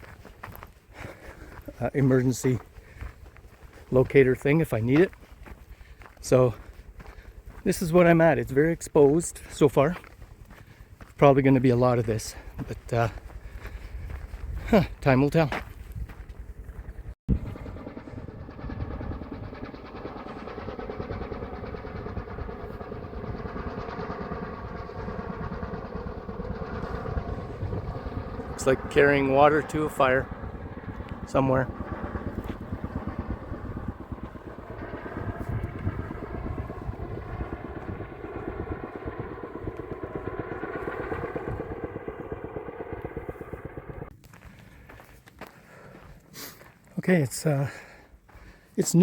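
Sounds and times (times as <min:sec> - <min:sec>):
helicopter rotor beating: 0:00.0 - 0:44.2.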